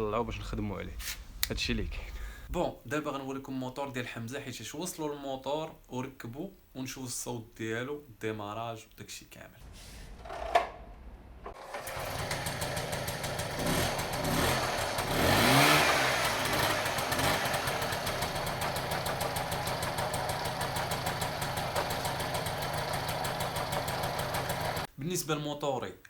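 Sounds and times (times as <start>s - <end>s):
moped engine revving and idling: 11.5s - 24.9s.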